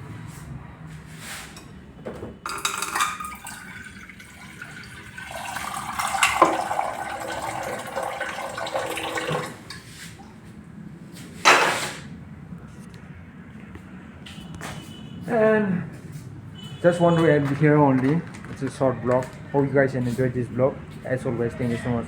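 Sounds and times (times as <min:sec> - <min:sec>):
water pouring into a vessel: 0:02.5 - 0:10.1.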